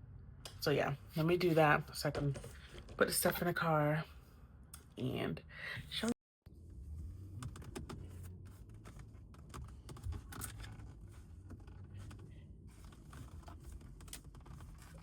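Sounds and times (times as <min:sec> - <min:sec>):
low steady hum: 0:00.0 - 0:15.0
small clicks and rustles: 0:07.3 - 0:15.0
scraping and rubbing: 0:07.8 - 0:15.0.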